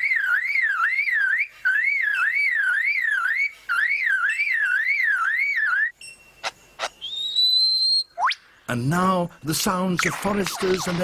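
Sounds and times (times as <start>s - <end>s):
bird whistling like a car alarm: 0.0s - 8.4s.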